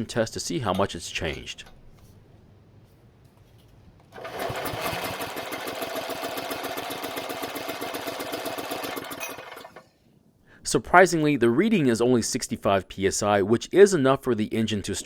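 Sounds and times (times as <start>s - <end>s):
small engine cranking: 4.2s - 9.8s.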